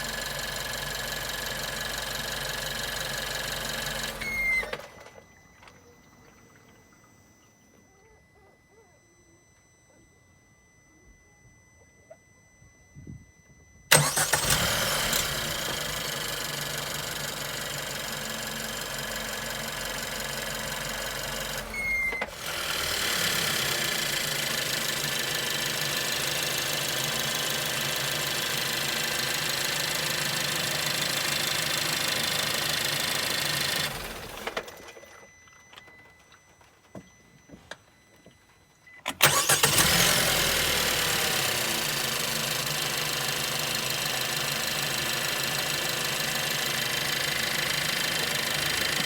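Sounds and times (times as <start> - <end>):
car engine running: 0.0 - 4.2, 13.9 - 34.6, 39.2 - 49.0
car engine cranking and starting: 0.0 - 6.8, 13.9 - 35.3, 39.0 - 49.0.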